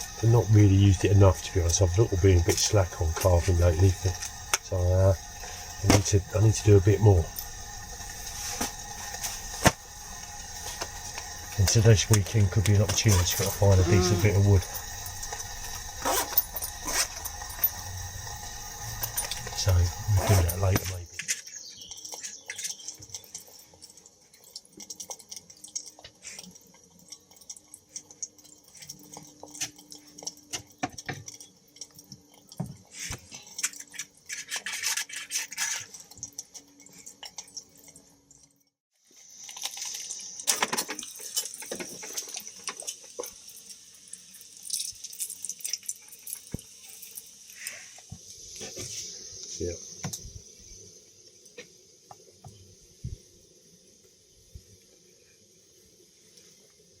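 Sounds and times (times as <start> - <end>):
steady high hiss: 0.0 - 23.3, 39.1 - 57.0.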